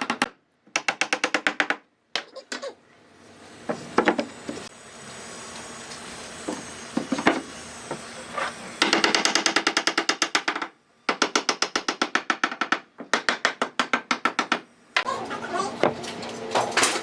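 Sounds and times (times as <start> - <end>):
rapid knocking on wood: 8.8 - 14.7.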